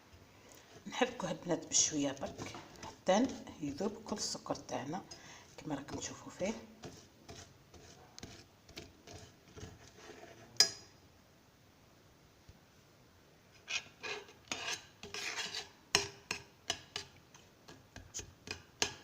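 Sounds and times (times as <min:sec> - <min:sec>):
utensil scraping sugar in saucepan: 0:00.7 - 0:10.8, 0:13.6 - 0:19.0.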